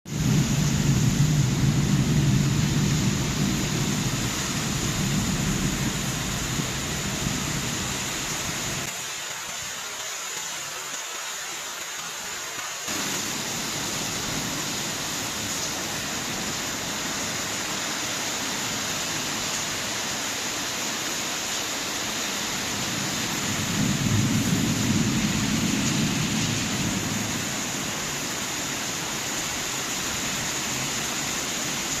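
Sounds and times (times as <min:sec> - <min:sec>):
thunder rumbling: 0:00.1 - 0:08.9, 0:23.0 - 0:28.0
heavy rain: 0:00.1 - 0:32.0.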